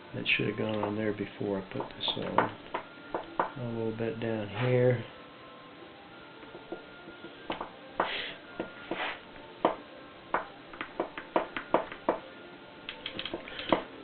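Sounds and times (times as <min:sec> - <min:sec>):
clicks and knocks of handled parts: 0:12.9 - 0:13.9.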